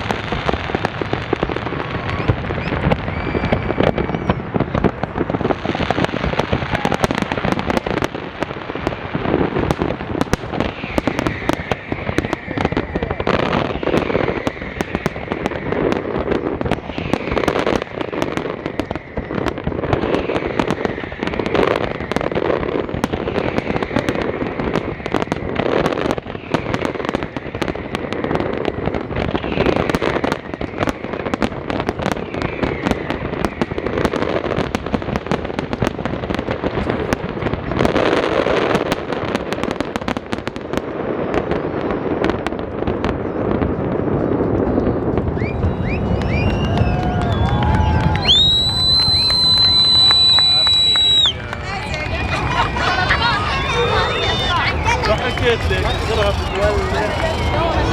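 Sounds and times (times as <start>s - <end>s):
fireworks crackling and popping: 0.0s - 57.9s
rumble of firework bursts: 0.0s - 57.9s.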